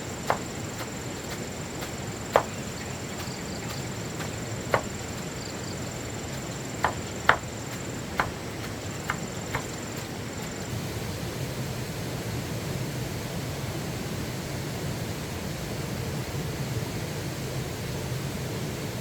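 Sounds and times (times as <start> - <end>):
background hiss: 0.0 - 19.0
sharp knocks: 6.8 - 7.5, 8.2 - 8.4.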